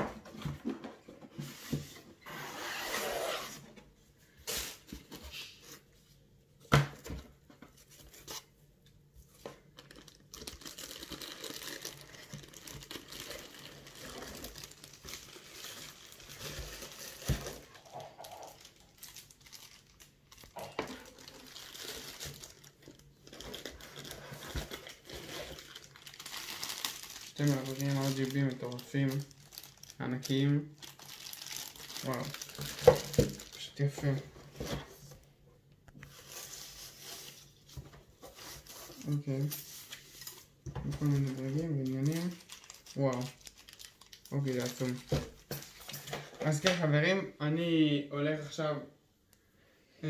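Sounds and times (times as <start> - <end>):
plastic packaging crinkling: 9.6 - 34.2, 38.4 - 46.3.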